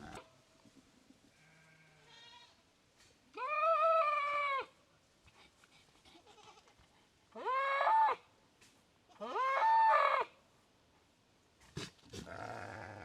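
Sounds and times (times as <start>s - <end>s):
goat bleating: 1.4s - 2.6s, 6.1s - 6.7s, 12.2s - 13.0s.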